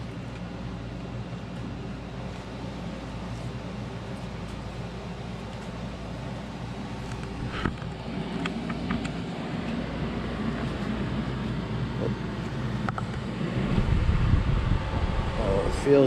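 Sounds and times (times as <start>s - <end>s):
air conditioner humming: 0.0s - 16.0s.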